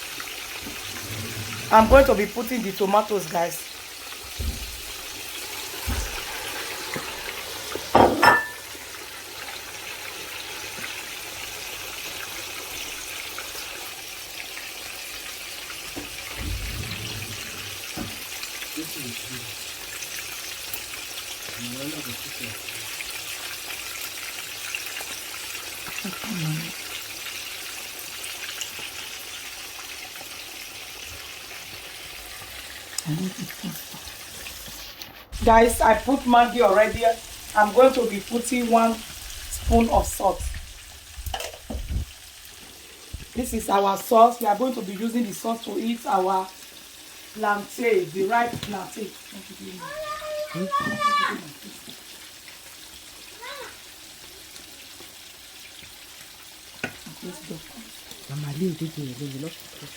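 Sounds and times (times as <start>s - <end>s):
food sizzling in a pot: 0.0s - 59.9s
loud metallic clatter: 16.2s - 18.3s.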